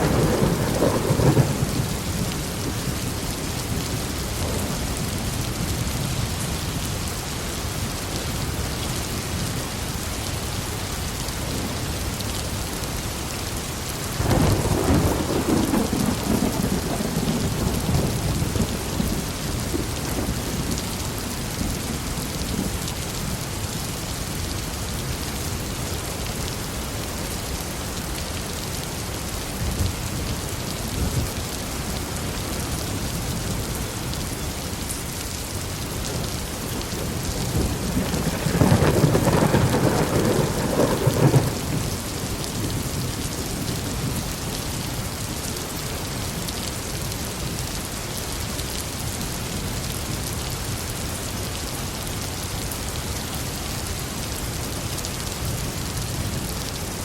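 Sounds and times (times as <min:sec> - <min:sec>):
thunder rumbling: 0:00.0 - 0:06.0, 0:14.2 - 0:22.8, 0:36.1 - 0:44.2
heavy rain falling: 0:00.0 - 0:57.0.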